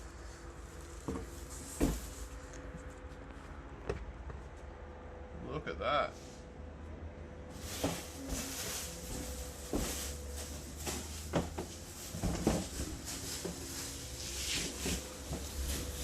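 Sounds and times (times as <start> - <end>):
cardboard and foam rustling: 0.0 - 3.6, 7.5 - 16.0
faint steady hum: 0.0 - 16.0.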